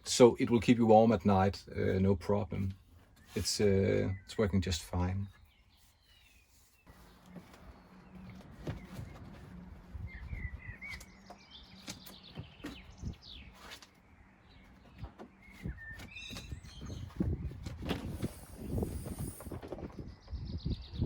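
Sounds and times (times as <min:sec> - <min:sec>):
small birds chirping: 0:00.0 - 0:21.0
knocks and rustling: 0:06.9 - 0:20.2.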